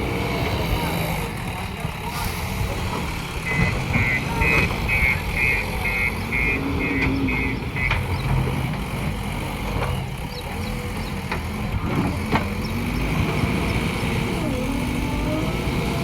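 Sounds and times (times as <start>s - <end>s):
diesel engine running: 0.0s - 16.0s
reversing alarm beeping: 3.4s - 8.0s.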